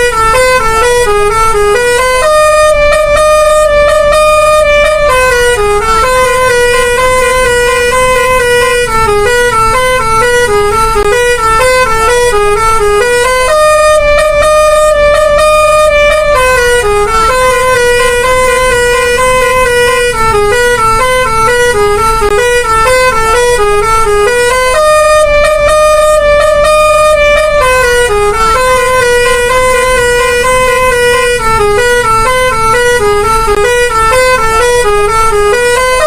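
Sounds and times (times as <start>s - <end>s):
musical bus horn playing a tune: 0.0s - 36.0s.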